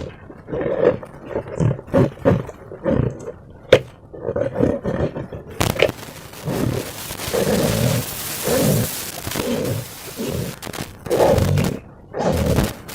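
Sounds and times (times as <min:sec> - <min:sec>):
slime and balloons squeaking: 0:05.6 - 0:12.9
steady hiss: 0:05.6 - 0:12.9.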